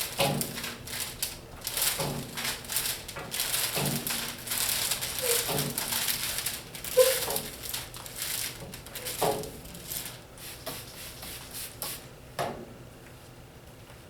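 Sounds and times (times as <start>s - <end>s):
squeegee squeaking on wet glass: 5.2s - 5.6s, 6.9s - 7.4s.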